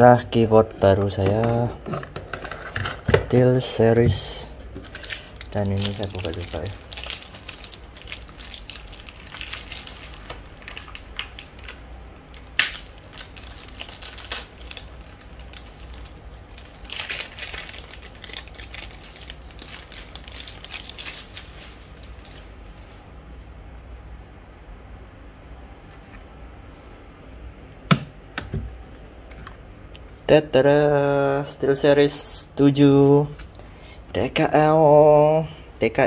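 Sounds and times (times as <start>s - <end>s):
plastic packaging crinkling: 4.7s - 23.0s.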